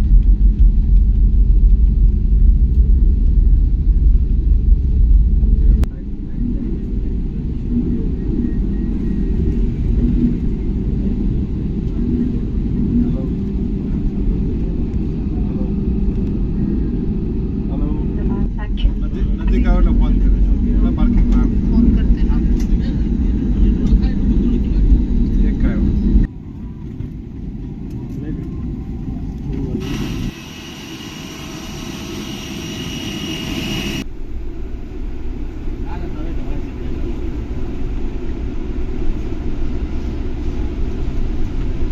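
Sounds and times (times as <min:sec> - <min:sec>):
deep vehicle rumble: 0:00.0 - 0:30.4
jet engines whining: 0:05.6 - 0:41.9.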